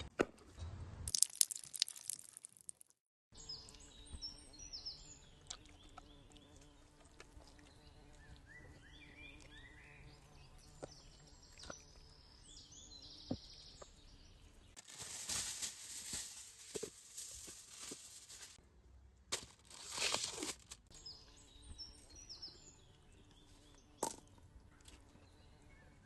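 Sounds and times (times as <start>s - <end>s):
small birds chirping: 3.4s - 16.3s, 20.9s - 26.0s.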